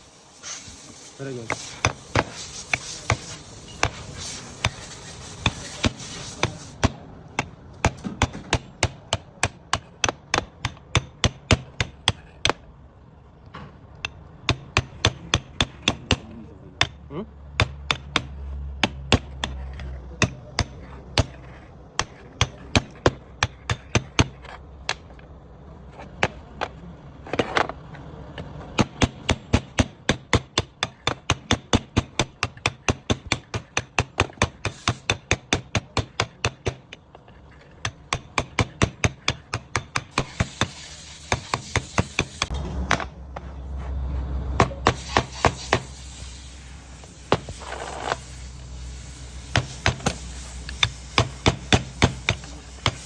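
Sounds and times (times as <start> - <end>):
hand hammer striking metal: 1.5 - 12.6, 13.9 - 21.4, 22.0 - 25.2, 28.7 - 37.0, 37.7 - 43.1, 49.0 - 53.0.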